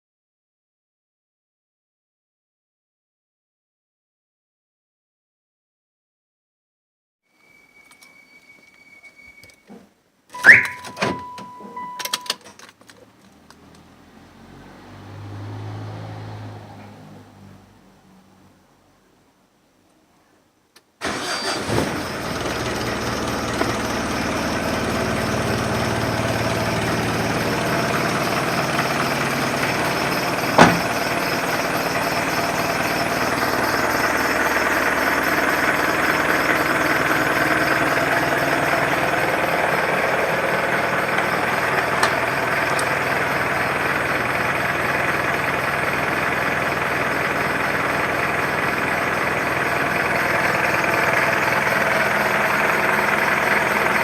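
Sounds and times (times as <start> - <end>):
diesel engine idling: 10.4 - 11.4, 21.0 - 54.0.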